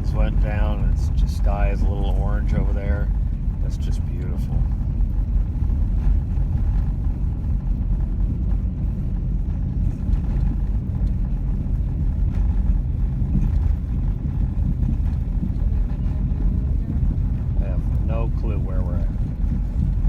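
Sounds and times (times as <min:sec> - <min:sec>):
car engine and tyre noise: 0:00.0 - 0:20.0.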